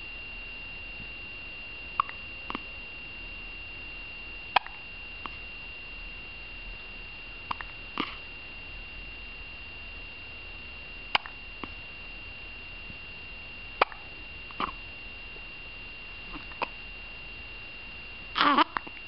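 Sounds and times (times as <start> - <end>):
high-pitched whine: 0.0 - 19.0
sharp hiccups: 2.0 - 2.6, 4.5 - 4.8, 7.5 - 8.2, 11.1 - 11.7, 13.8 - 14.8, 16.3 - 16.8, 18.4 - 18.9.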